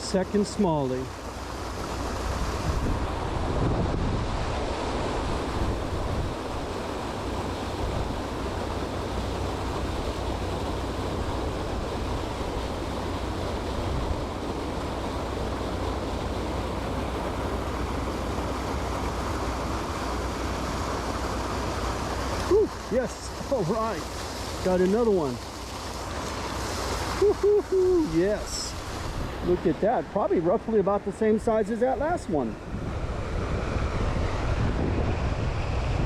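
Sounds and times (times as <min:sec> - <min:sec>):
creek water flowing over rocks: 0:00.0 - 0:32.7
wind rumbling on microphone: 0:01.5 - 0:30.1, 0:31.9 - 0:36.0.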